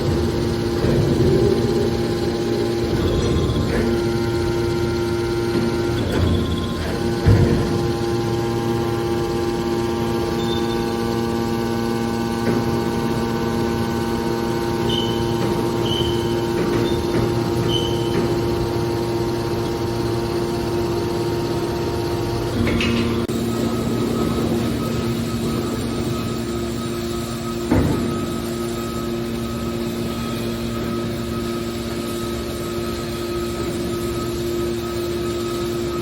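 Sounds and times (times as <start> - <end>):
hydraulic baler hum: 0.0 - 36.0
faint high squeaks: 14.8 - 18.4.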